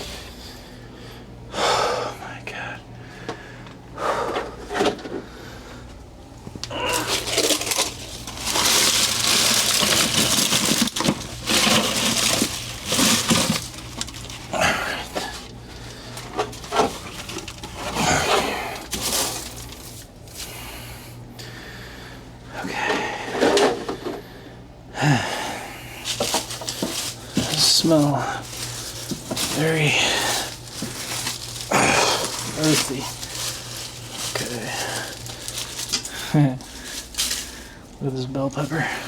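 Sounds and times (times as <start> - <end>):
rustling and scraping of soil: 6.5 - 21.0, 25.9 - 39.0.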